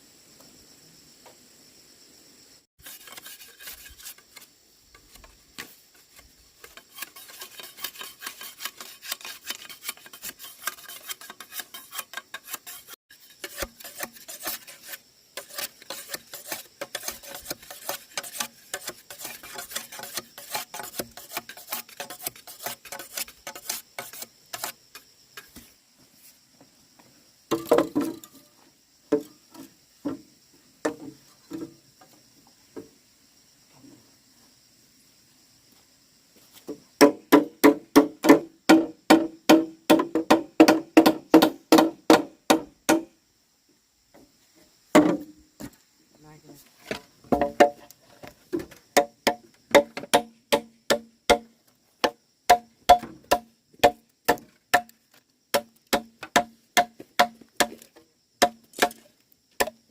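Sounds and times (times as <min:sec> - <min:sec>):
dry scraping and clicking: 0:02.8 - 0:25.7.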